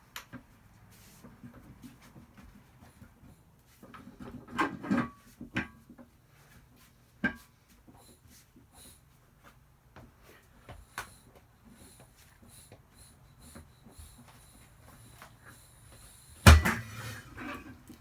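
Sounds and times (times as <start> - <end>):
metal clanks and knocks: 16.5 - 17.7.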